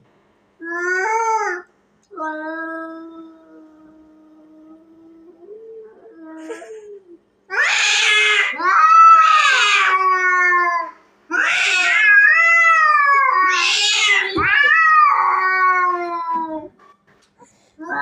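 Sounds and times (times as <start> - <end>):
cats yowling: 7.5 - 17.0.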